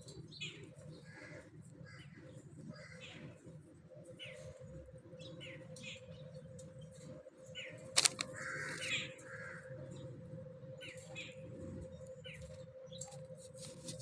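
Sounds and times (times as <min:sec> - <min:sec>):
steady low hum: 0:03.5 - 0:14.0
sharp click: 0:08.0 - 0:08.3.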